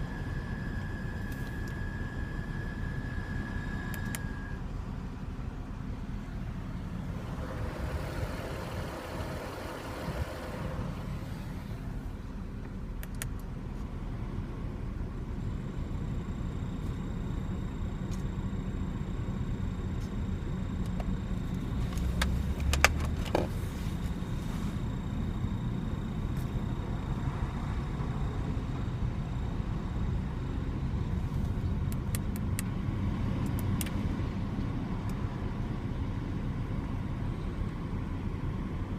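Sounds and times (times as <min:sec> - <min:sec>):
high-pitched whistle: 0:00.0 - 0:04.6
car engine idling: 0:00.0 - 0:38.9
sharp clicks: 0:13.0 - 0:13.5.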